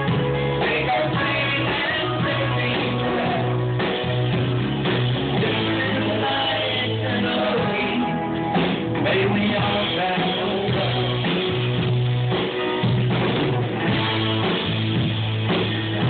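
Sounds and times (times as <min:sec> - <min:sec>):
folk-rock band playing: 0:00.0 - 0:16.0.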